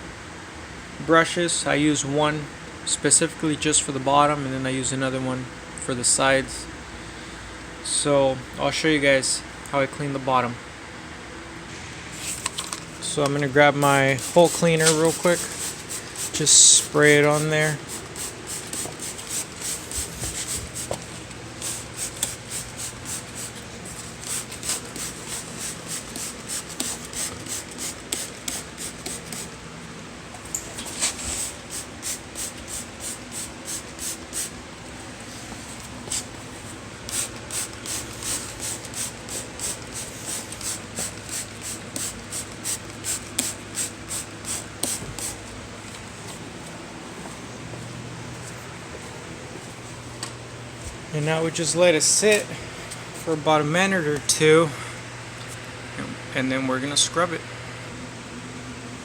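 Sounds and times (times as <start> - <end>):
spray bottle hissing sprays: 13.7 - 29.5, 30.6 - 34.6, 37.0 - 45.4.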